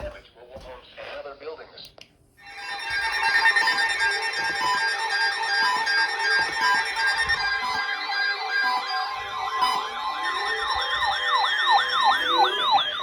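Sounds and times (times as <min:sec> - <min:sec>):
warbling siren alert: 0:02.4 - 0:13.0
alert beeps: 0:02.5 - 0:13.0.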